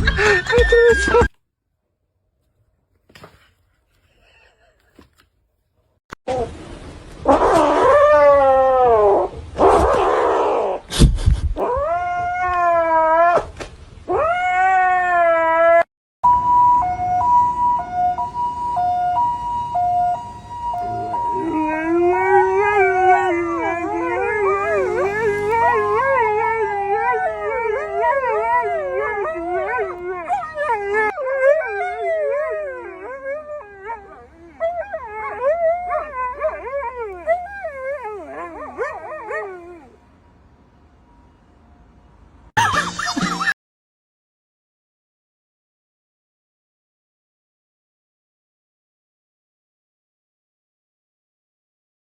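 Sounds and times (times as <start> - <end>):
two-tone siren: 16.2 - 27.4
dog howling: 20.7 - 40.0.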